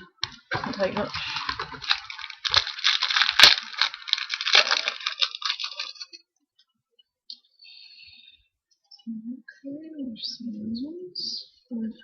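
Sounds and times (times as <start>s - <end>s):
foil wrapper snapping: 0.2s - 6.2s
foil wrapper crinkling and tearing: 0.3s - 6.2s.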